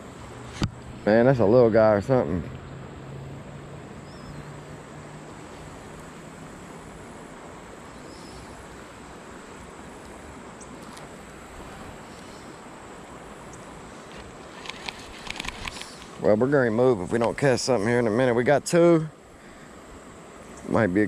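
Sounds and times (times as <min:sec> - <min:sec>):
outdoor background hiss: 0:00.0 - 0:21.0
high-pitched insect drone: 0:03.6 - 0:15.0
faint bird chirp: 0:04.0 - 0:04.6, 0:07.9 - 0:08.6, 0:10.5 - 0:10.8, 0:20.4 - 0:20.8
small clicks: 0:13.5 - 0:16.2.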